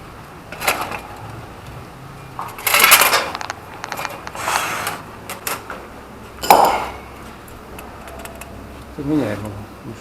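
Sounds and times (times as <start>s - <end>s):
metal tools clanking and rattling: 2.4s - 4.2s.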